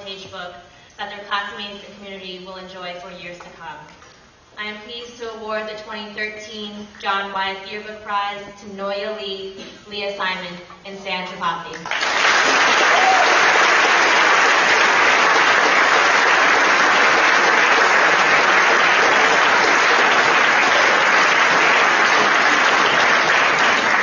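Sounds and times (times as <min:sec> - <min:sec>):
audience applauding: 0:11.9 - 0:24.0.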